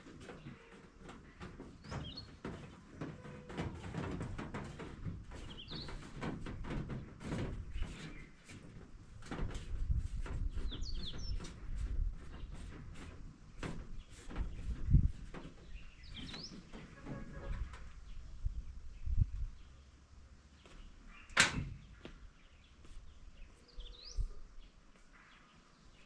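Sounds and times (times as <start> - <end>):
bird chirping: 1.8 - 3.3, 5.4 - 6.1, 10.5 - 12.7, 15.6 - 19.9, 20.5 - 26.0.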